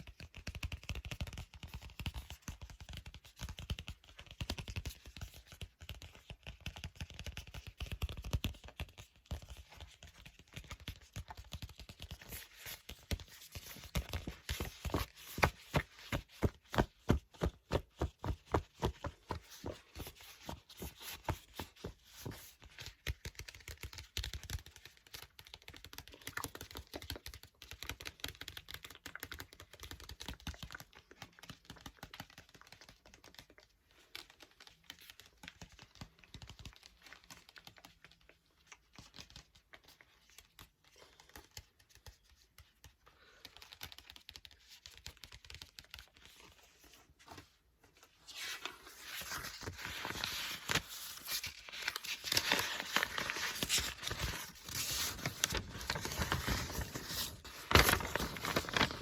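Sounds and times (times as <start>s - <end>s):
book pages turning: 5.2s - 25.3s, 43.5s - 59.0s.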